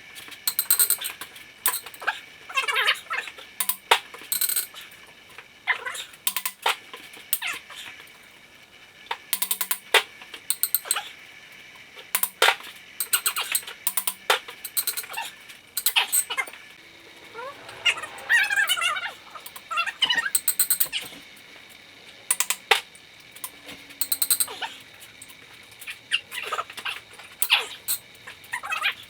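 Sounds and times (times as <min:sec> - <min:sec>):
metallic clinks of tools: 0:00.5 - 0:02.1, 0:03.6 - 0:04.8, 0:06.3 - 0:06.7, 0:09.3 - 0:11.0, 0:12.2 - 0:16.6, 0:20.4 - 0:21.2, 0:22.3 - 0:25.4.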